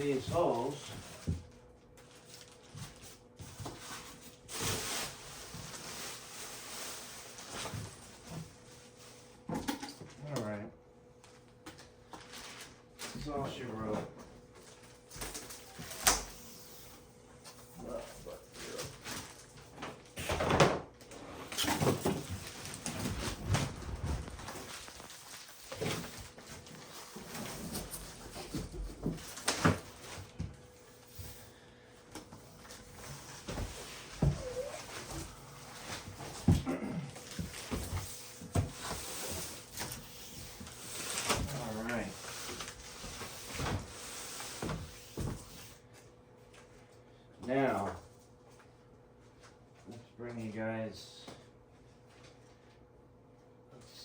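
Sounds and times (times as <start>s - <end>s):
rustling of handled objects: 21.5s - 30.2s.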